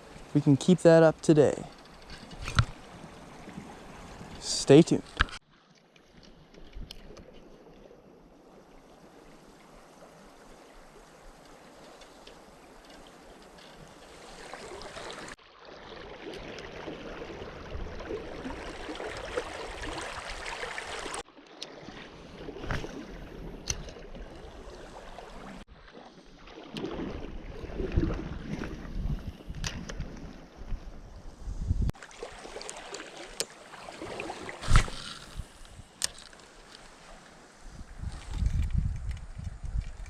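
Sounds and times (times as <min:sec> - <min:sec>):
flowing river water: 0:00.0 - 0:38.4
wind buffeting microphone: 0:27.2 - 0:32.0, 0:37.6 - 0:40.0.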